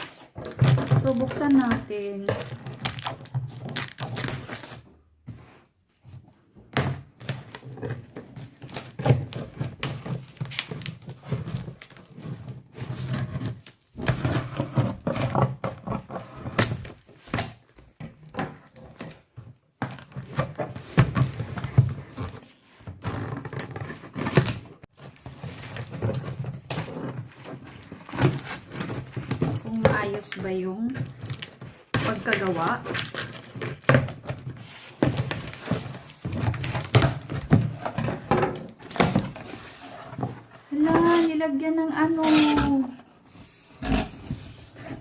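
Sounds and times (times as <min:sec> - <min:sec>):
cardboard rustling and scraping: 0:00.0 - 0:45.0.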